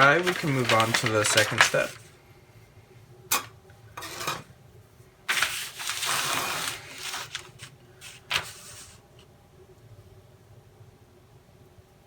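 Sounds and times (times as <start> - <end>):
parts rustling: 0.0 - 2.1, 3.3 - 4.5, 5.3 - 9.0.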